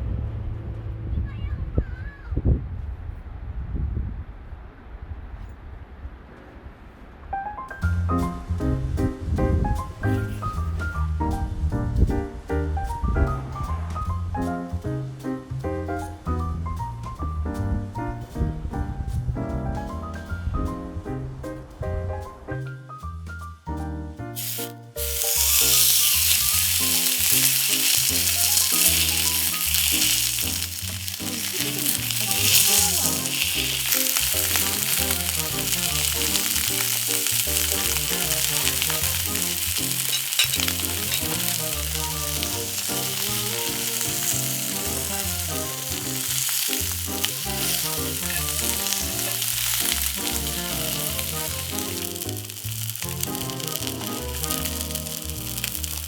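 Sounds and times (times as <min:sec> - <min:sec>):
background music: 0:07.6 - 0:56.0
steady sizzling hiss: 0:24.2 - 0:56.0.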